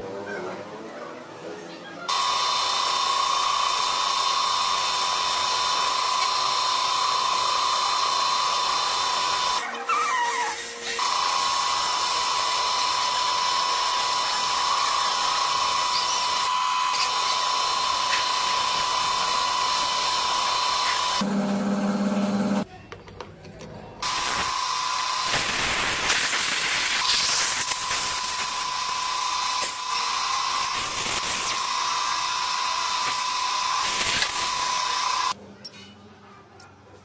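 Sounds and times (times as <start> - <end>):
lathe whining: 10.8 - 22.6.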